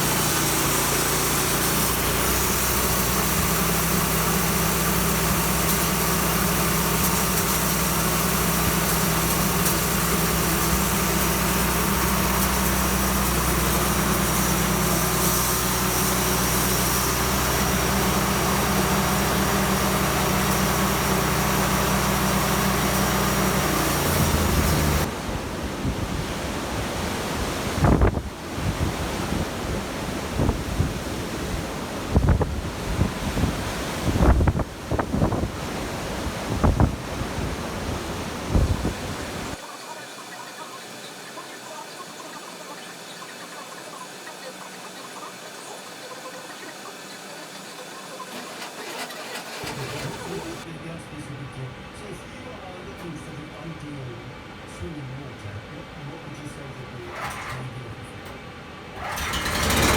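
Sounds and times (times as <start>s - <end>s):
sawmill petrol engine running: 0.0s - 51.0s, 55.8s - 59.9s
wind buffeting the microphone: 25.1s - 39.6s.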